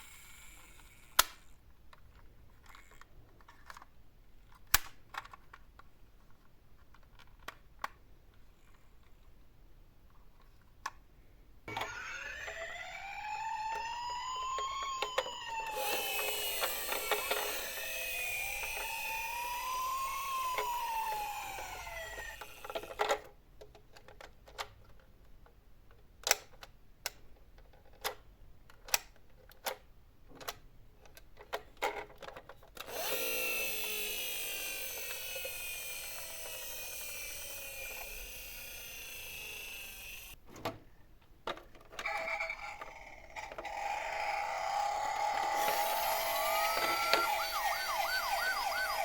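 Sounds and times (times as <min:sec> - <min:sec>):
ambulance siren wailing: 0:11.7 - 0:22.6, 0:42.1 - 0:49.0
siren-like sliding tones: 0:11.7 - 0:23.0, 0:32.9 - 0:40.4, 0:42.0 - 0:49.0.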